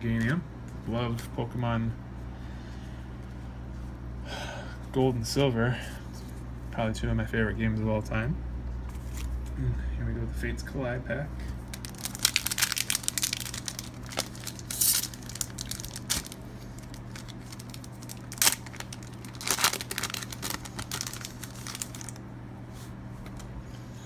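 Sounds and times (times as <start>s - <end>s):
foil wrapper tearing and crinkling: 11.6s - 22.2s.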